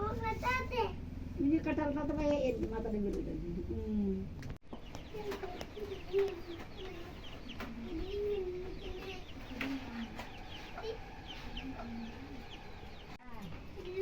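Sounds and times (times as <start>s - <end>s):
chickens clucking: 4.7s - 13.2s.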